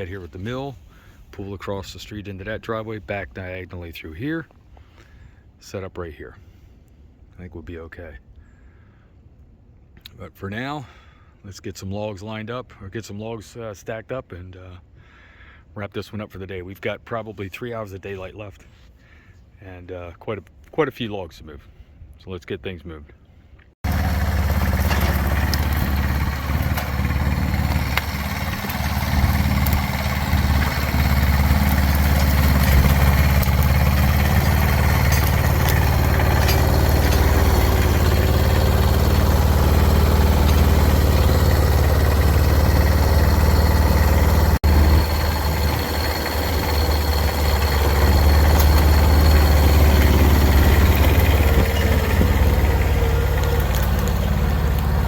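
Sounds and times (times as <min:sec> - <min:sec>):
tractor diesel engine running: 0:23.8 - 0:55.0.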